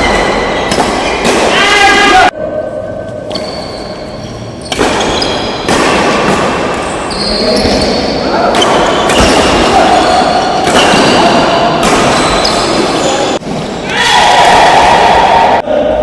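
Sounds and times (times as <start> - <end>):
racket striking shuttlecock: 0.0 - 1.5, 4.7 - 14.0.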